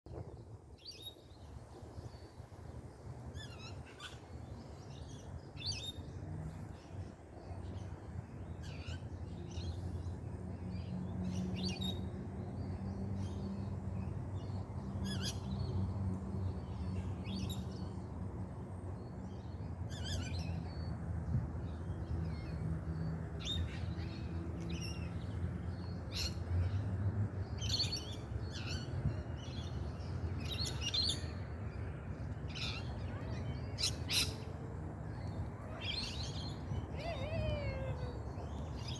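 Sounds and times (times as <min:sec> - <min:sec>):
birds chirping and calling: 0:35.7 - 0:38.9.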